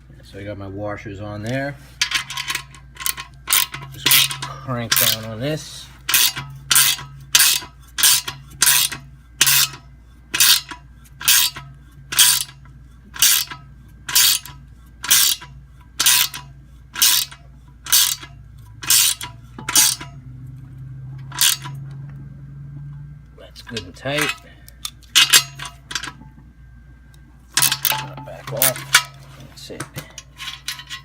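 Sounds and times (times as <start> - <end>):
steady low hum: 0.0 - 31.0
ratchet clicking: 2.0 - 5.3, 6.0 - 12.6, 13.2 - 20.2, 21.2 - 21.9, 23.7 - 26.2.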